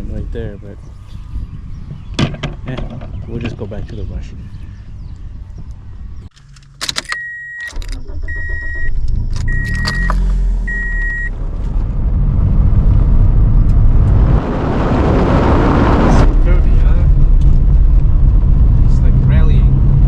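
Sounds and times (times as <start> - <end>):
road noise: 0.0 - 20.0
car door shutting: 6.7 - 11.3
car warning chime beeps: 7.1 - 11.3
car engine running: 7.7 - 14.6.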